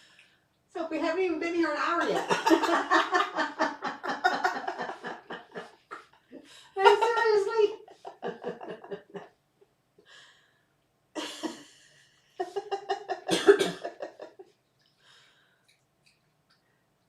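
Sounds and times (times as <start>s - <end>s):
person laughing: 2.0s - 6.1s, 6.8s - 9.3s, 12.4s - 14.4s
cough-like burst: 13.3s - 14.0s.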